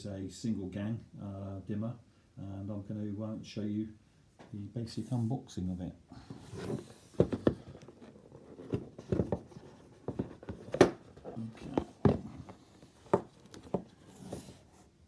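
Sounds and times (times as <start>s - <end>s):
cardboard and plastic packaging handled: 6.2s - 15.0s.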